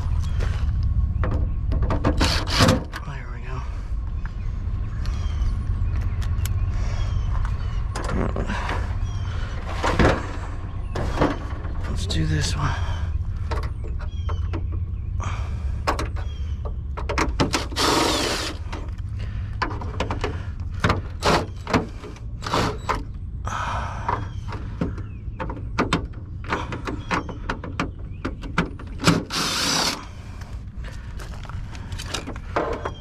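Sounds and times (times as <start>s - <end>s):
steady low hum: 0.0s - 33.0s
power drill running: 17.6s - 18.6s, 29.1s - 30.0s.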